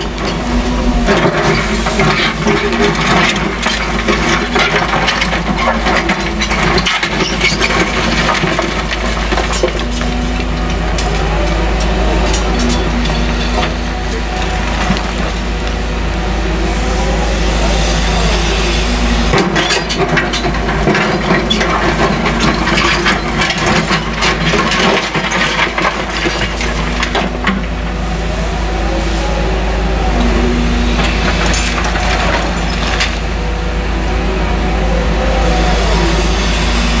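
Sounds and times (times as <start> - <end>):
rubble cracking and crunching: 0.0 - 10.3, 19.3 - 27.6
excavator diesel engine: 0.0 - 37.0.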